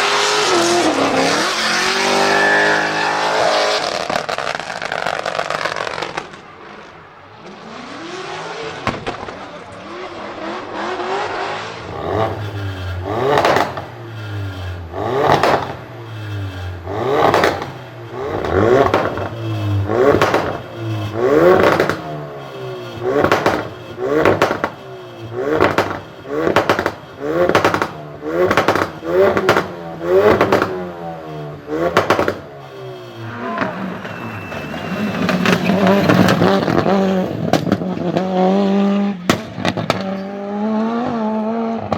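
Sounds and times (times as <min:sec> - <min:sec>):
car engine revving: 0:00.0 - 0:41.9
exhaust pops and bangs: 0:03.8 - 0:06.4, 0:08.8 - 0:09.5, 0:13.2 - 0:14.0, 0:14.6 - 0:16.0, 0:17.2 - 0:22.3, 0:23.0 - 0:24.8, 0:25.4 - 0:30.9, 0:31.8 - 0:32.5, 0:35.2 - 0:38.3, 0:39.2 - 0:40.2.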